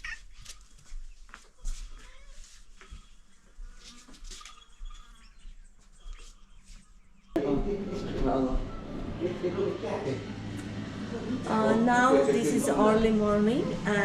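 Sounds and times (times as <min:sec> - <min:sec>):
faint animal calls: 0:00.0 - 0:00.7.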